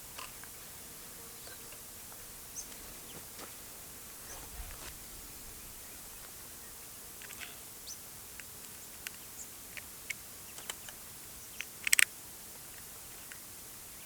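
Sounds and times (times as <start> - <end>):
outdoor hiss: 0.0 - 11.4
bird chirps: 4.2 - 8.0
insect ticks: 8.3 - 12.1.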